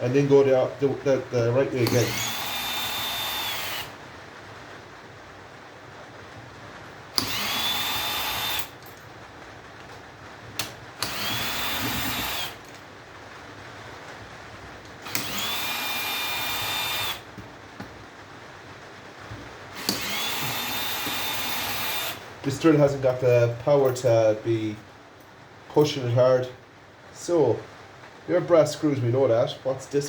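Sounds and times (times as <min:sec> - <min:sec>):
electric drill whining: 0:01.8 - 0:04.0, 0:07.2 - 0:08.8, 0:11.0 - 0:12.7, 0:15.0 - 0:17.3, 0:19.8 - 0:22.2.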